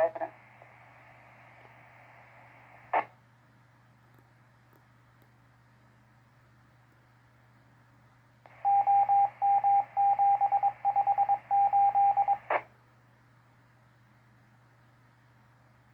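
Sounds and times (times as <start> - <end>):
radio hiss: 0.0 - 3.2, 12.2 - 12.7
morse code tone: 8.6 - 12.5.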